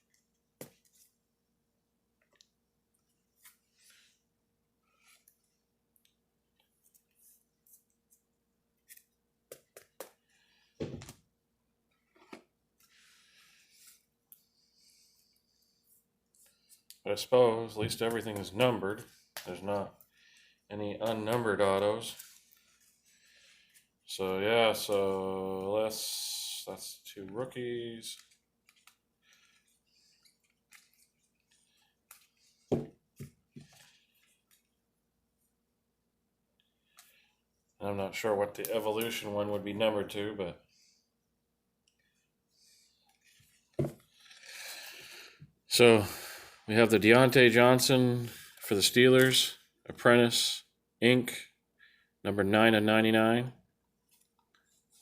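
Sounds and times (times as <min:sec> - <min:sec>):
cards sliding into plastic sleeves: 0:21.0 - 0:24.0, 0:28.0 - 0:34.6
dull thumps on table: 0:43.8 - 0:44.0.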